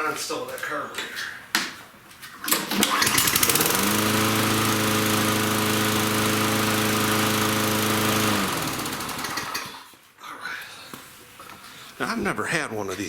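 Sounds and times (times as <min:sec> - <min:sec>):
lawn mower engine starting: 0:02.4 - 0:09.9.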